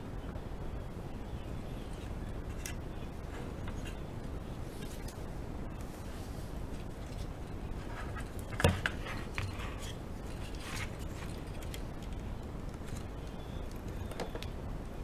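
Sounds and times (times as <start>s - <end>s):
steady low hum: 0.0s - 15.0s
small objects handled on surface: 5.8s - 12.2s.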